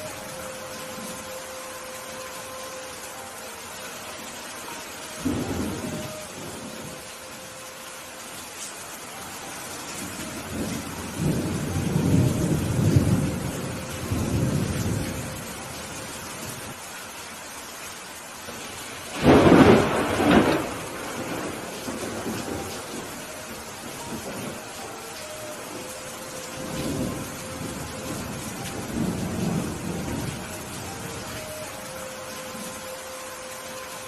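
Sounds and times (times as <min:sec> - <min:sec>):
steady rain: 0:00.0 - 0:34.0
rolling thunder rumble: 0:10.0 - 0:16.7, 0:18.6 - 0:24.7, 0:25.6 - 0:31.4
loud thunderclap: 0:19.2 - 0:22.6.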